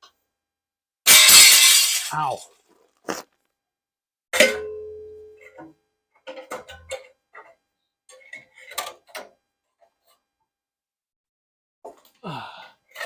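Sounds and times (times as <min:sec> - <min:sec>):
ringing metallic clank: 0:01.1 - 0:02.2.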